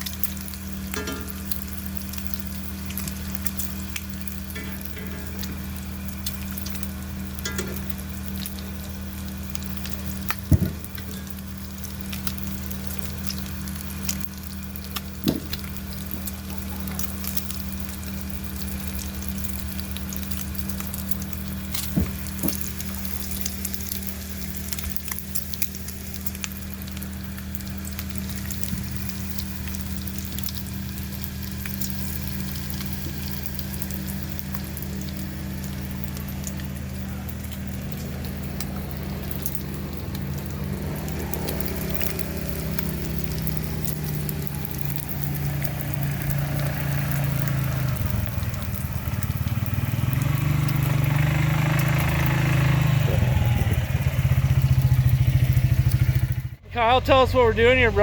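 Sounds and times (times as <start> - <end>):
crackling hiss: 0.0 - 58.0
vehicle engine humming: 0.0 - 58.0
sharp knocks: 10.4 - 11.2, 15.3 - 15.6.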